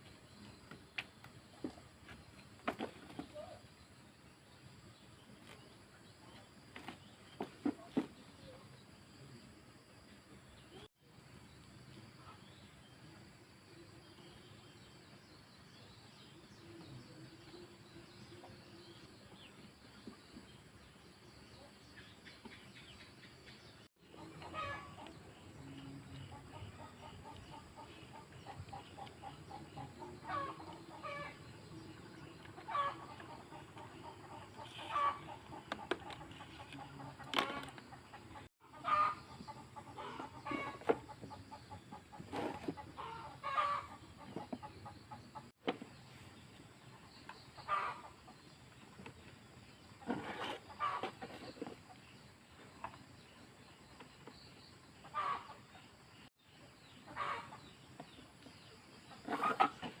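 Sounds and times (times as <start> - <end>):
chickens clucking: 21.6 - 60.0.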